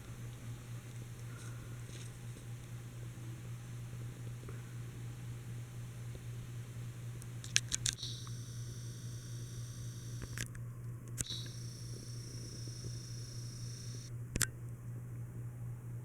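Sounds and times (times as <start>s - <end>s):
ceiling fan humming: 0.0s - 16.0s
faint high whine: 6.8s - 10.5s, 11.1s - 14.5s
switch clicks: 9.8s - 14.6s.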